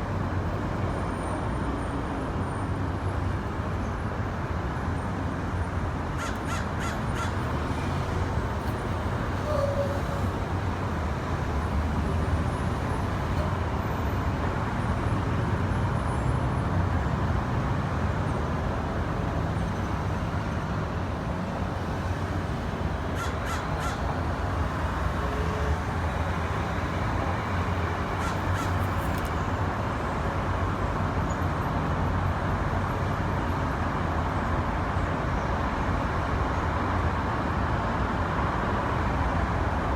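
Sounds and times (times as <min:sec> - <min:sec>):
road traffic rumble: 0:00.0 - 0:39.9
crows cawing: 0:06.2 - 0:08.0, 0:23.1 - 0:25.1, 0:27.1 - 0:29.3.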